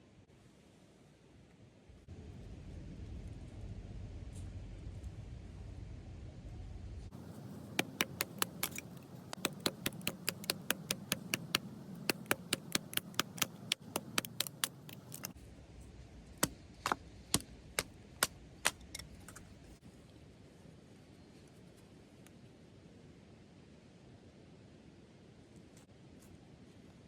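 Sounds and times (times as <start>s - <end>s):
sharp knocks or taps: 7.2s - 15.4s.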